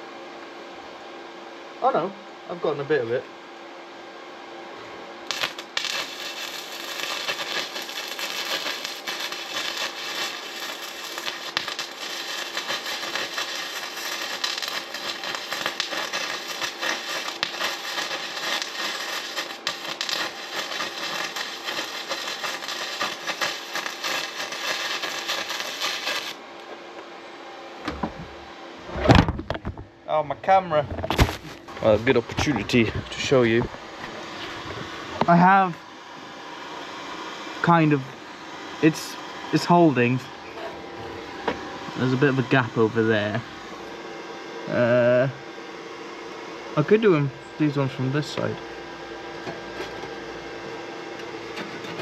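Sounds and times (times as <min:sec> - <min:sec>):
welder crackling: 0:05.2 - 0:26.7, 0:31.1 - 0:35.8.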